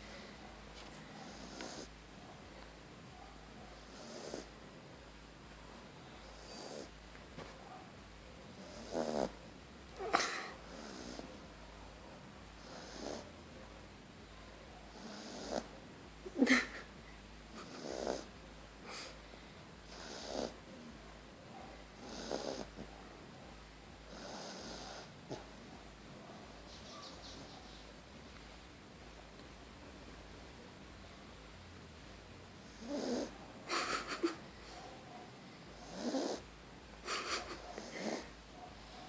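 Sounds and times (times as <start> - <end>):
pet snoring: 1.2 - 2.0, 3.8 - 4.5, 6.2 - 7.0, 8.6 - 9.4, 10.0 - 11.5, 12.6 - 13.4, 14.9 - 15.7, 17.5 - 18.4, 19.8 - 20.6, 22.0 - 22.9, 24.1 - 25.5, 32.6 - 33.4, 35.7 - 36.5, 37.1 - 38.4
pet snorting: 1.2 - 2.0, 3.8 - 4.5, 6.4 - 6.9, 8.6 - 9.4, 10.0 - 11.4, 12.6 - 13.3, 15.0 - 15.7, 17.5 - 18.3, 19.9 - 20.6, 22.0 - 22.9, 24.1 - 25.5, 32.6 - 35.0, 35.8 - 36.4, 37.0 - 39.0.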